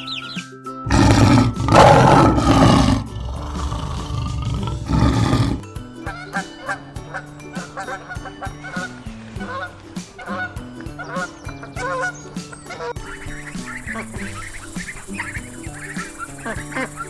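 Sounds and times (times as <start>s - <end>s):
background music: 0.0s - 17.0s
large animal roaring: 0.9s - 5.6s.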